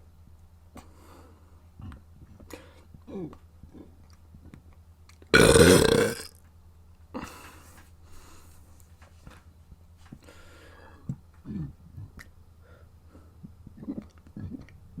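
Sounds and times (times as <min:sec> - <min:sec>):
person burping: 0:05.3 - 0:06.3.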